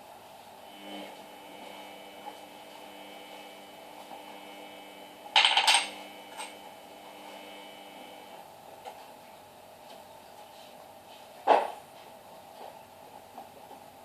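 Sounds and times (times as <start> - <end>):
washing machine spinning: 0.0 - 9.6.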